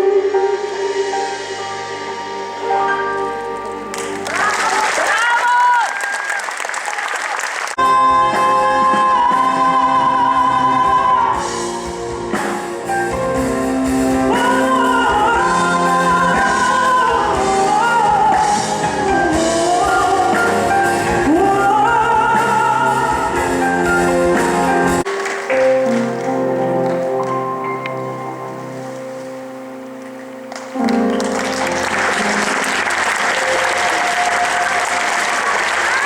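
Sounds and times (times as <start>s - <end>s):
person singing wordless melody: 7.8s - 11.9s, 14.1s - 24.6s
sustained instrumental accompaniment: 7.8s - 35.8s.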